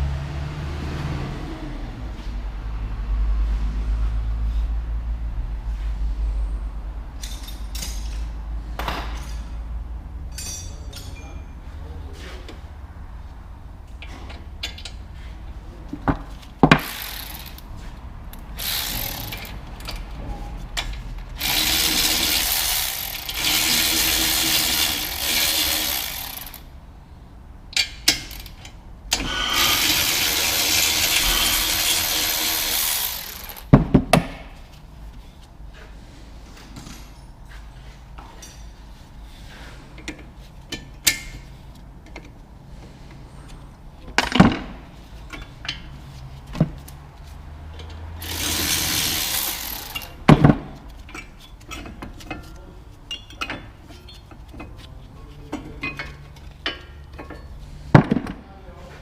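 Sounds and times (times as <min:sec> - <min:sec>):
metallic knocks and clinks of tools: 0:07.2 - 0:09.6, 0:10.3 - 0:11.6, 0:53.1 - 0:54.3
power tool running: 0:16.8 - 0:17.6, 0:18.6 - 0:19.5, 0:21.4 - 0:26.7, 0:29.2 - 0:33.7, 0:48.2 - 0:50.2.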